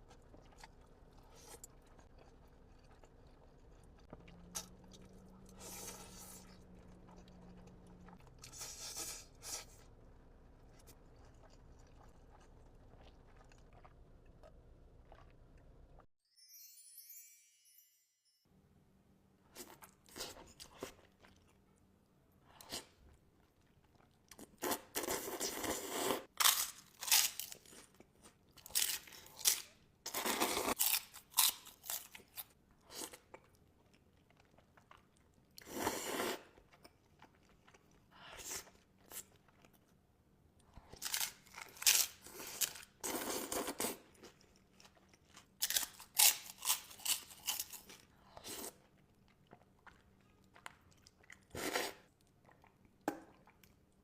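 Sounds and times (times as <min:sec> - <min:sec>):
chewing: 0:00.0 - 0:09.8, 0:10.6 - 0:16.1, 0:30.2 - 0:40.0, 0:40.6 - 0:54.0.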